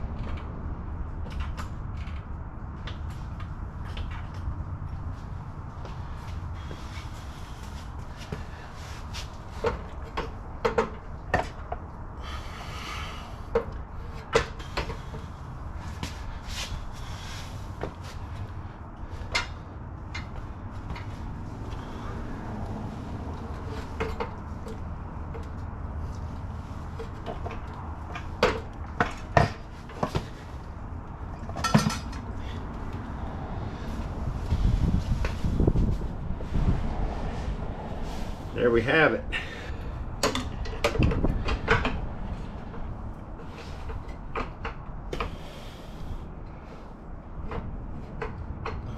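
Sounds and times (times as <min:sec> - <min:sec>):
tools knocking and clunking: 0:09.5 - 0:11.9, 0:23.4 - 0:25.5, 0:26.9 - 0:30.5, 0:31.3 - 0:32.3, 0:40.2 - 0:45.4.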